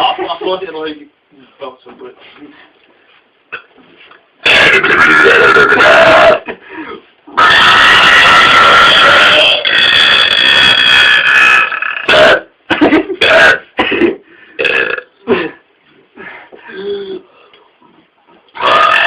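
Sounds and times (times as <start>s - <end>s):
man burping loudly: 4.4s - 6.6s, 7.4s - 15.6s, 18.6s - 19.0s.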